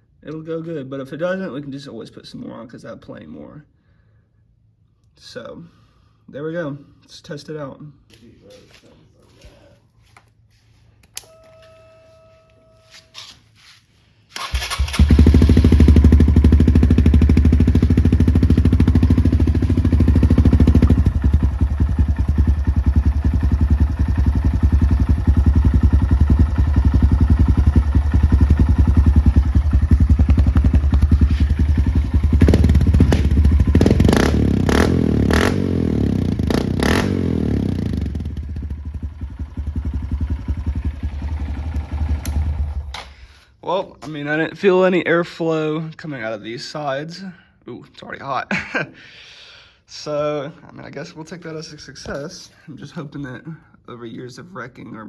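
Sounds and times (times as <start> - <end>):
dirt bike engine idling: 14.4 - 43.0.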